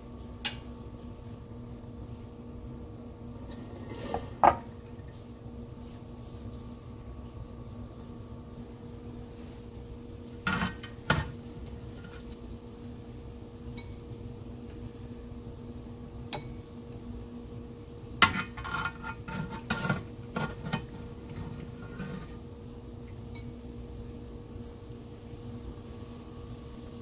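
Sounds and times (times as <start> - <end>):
faint steady hum: 0.0 - 27.0
metal utensils clinking: 3.4 - 4.6.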